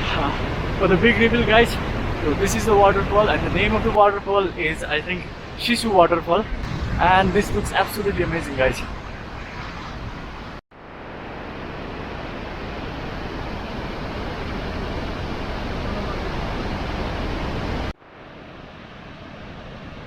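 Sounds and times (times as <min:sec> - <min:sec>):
waterfall roaring: 0:00.0 - 0:08.8, 0:10.9 - 0:18.5.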